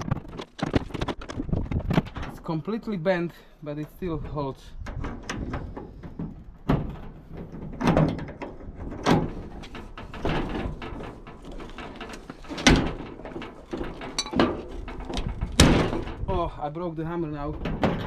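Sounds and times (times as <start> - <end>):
hammer clanking on metal padlock: 13.8 - 14.7.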